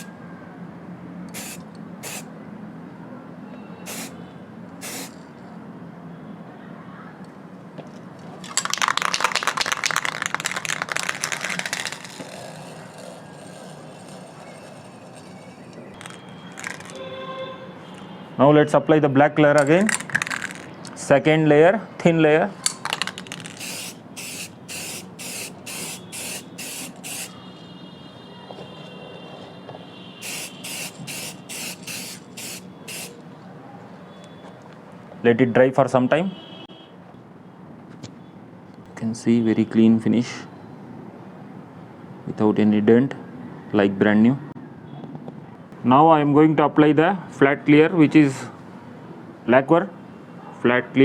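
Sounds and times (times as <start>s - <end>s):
spray paint can hissing: 1.3s - 2.3s, 3.9s - 4.2s, 4.8s - 5.2s, 8.4s - 17.0s, 22.7s - 27.7s, 30.2s - 33.2s.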